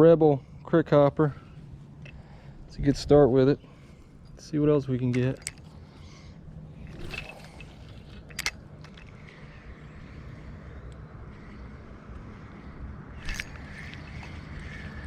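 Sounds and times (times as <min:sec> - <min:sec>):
faint outdoor hiss: 0:00.0 - 0:15.0
fishing reel click: 0:13.2 - 0:15.0.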